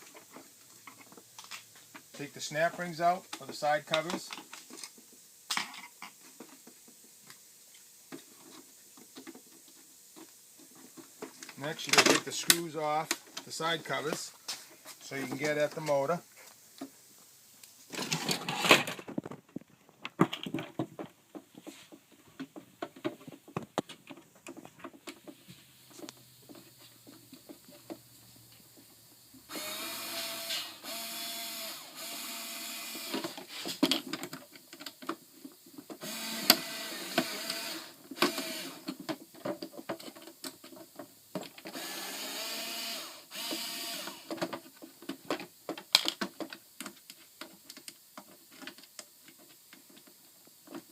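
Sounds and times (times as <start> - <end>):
power screwdriver running: 29.5 - 33.3, 36.0 - 38.8, 41.7 - 44.3
parts and screws clicking: 29.5 - 50.9.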